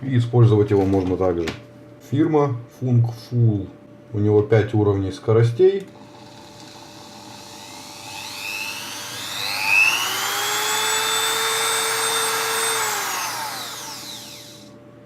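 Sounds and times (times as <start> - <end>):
rotary tool motor whining: 6.0 - 14.7.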